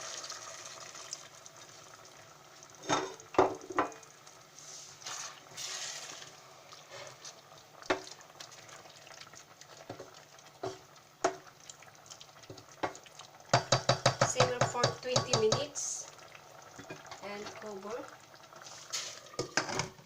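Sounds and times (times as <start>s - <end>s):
sauce sizzling: 0.0s - 20.0s
spoon stirring in pot: 9.6s - 15.7s
spoon knocking against pot: 12.8s - 15.7s.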